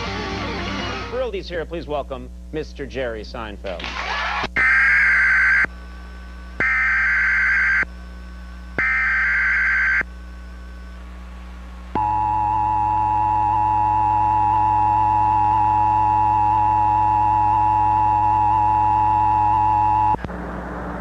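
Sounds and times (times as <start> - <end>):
buzzing digital data bursts: 8.8 - 10.1.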